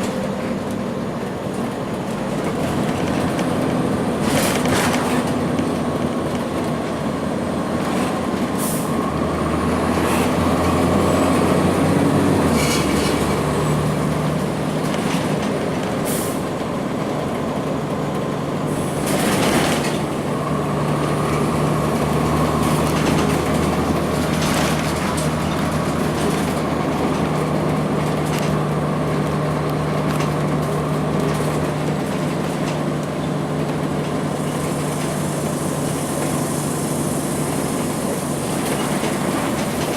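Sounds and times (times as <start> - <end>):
bus diesel engine drone: 0.0 - 39.9
air brake hisses: 8.6 - 9.0, 16.0 - 16.5, 34.5 - 38.7.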